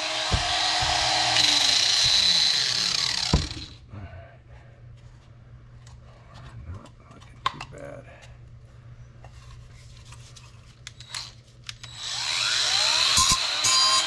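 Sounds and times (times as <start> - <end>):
steady low hum: 0.0 - 10.9.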